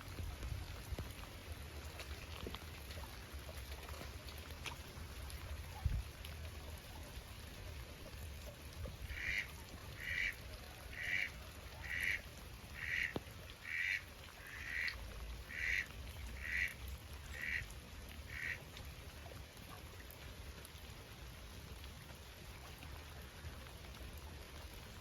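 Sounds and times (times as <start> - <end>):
duck quacking: 9.1 - 12.2, 12.8 - 14.9, 15.5 - 15.8, 16.4 - 16.7, 17.4 - 17.6, 18.3 - 18.6.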